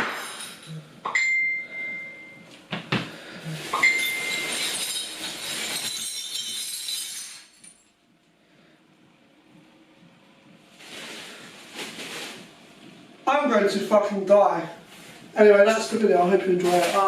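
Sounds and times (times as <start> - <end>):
glass shards clattering: 0.0 - 1.2, 3.6 - 7.9
glass breaking: 3.7 - 7.8.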